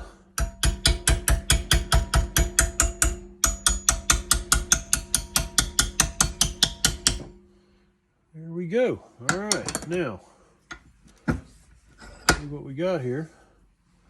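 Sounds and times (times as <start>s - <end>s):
hammer tapping on copper pipe: 0.3s - 7.5s, 9.2s - 10.0s.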